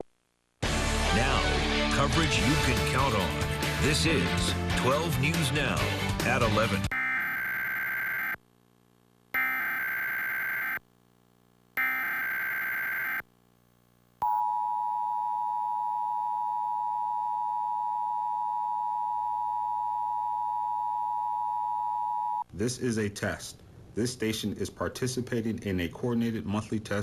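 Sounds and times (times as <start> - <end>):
digital header tone bursts: 9.4 - 10.8, 11.8 - 13.2
two-tone attention signal: 9.4 - 10.8, 11.8 - 13.2.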